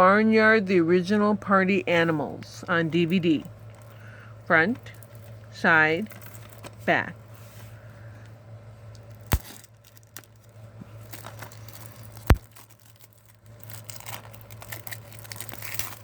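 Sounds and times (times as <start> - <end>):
low steady hum: 0.0 - 16.0
plastic wrapping tearing and crinkling: 4.8 - 5.4, 6.0 - 6.8, 9.0 - 16.0.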